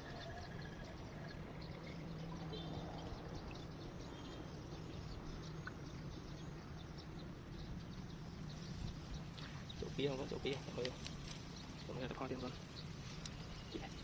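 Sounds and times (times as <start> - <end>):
birds chirping: 0.0 - 14.0.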